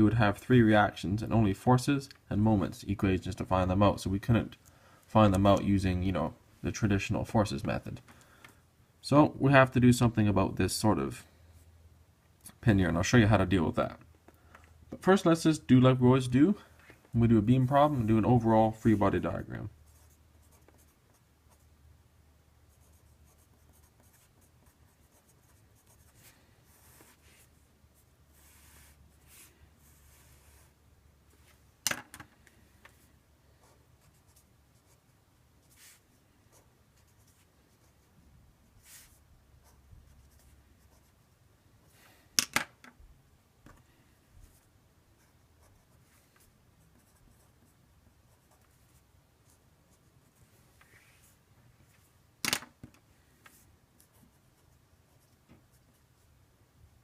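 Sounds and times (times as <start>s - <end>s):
pen scratching on paper: 22.7s - 30.8s, 38.8s - 41.3s, 44.5s - 46.2s, 46.9s - 50.1s.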